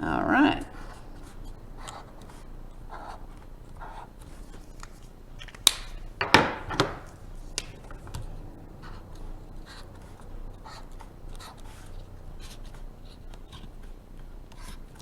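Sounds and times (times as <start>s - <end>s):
drawing tools clicking and knocking: 5.4s - 7.2s.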